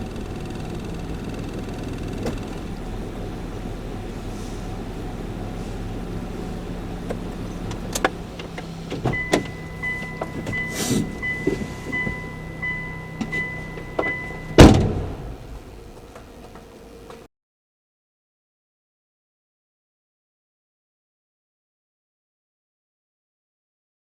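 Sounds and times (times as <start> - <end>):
car engine running: 0.0 - 17.3
car warning chime beeping: 4.8 - 17.1
car door slam: 7.0 - 9.6, 14.6 - 15.7.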